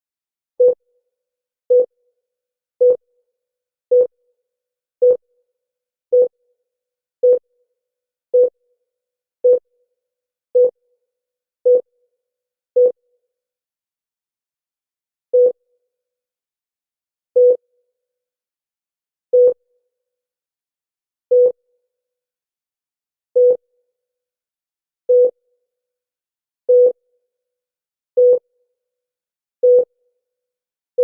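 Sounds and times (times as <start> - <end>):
low electronic heartbeat beep: 0.6 - 0.8, 1.7 - 1.9, 3.9 - 4.1, 5.0 - 5.2, 6.1 - 6.3, 7.2 - 7.4, 8.4 - 8.6, 9.4 - 9.6, 10.6 - 10.8, 11.7 - 11.9, 12.8 - 13.0, 15.3 - 15.6, 17.4 - 17.6, 19.4 - 19.6, 23.4 - 23.6, 25.1 - 25.4, 26.7 - 27.0, 29.6 - 29.9.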